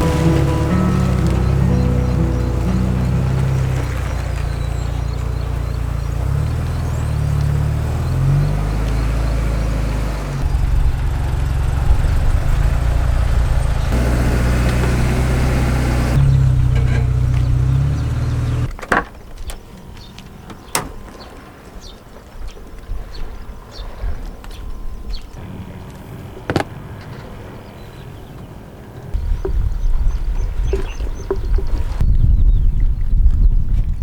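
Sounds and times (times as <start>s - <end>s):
background music with bass notes: 0.0s - 5.1s.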